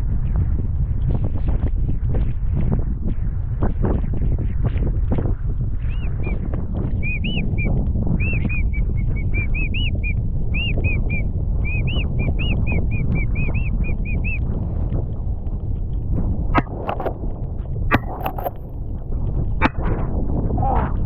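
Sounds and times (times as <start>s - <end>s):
wind on microphone: 0.0s - 21.0s
high whistled peeps: 7.0s - 14.4s.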